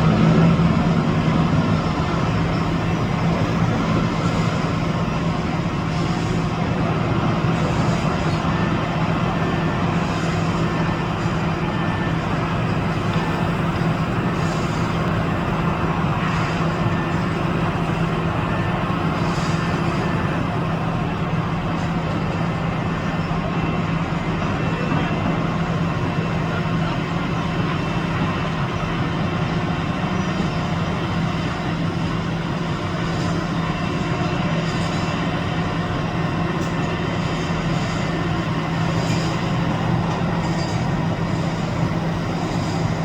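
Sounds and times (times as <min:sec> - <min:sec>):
construction machinery engine drone: 0:00.0 - 0:43.0.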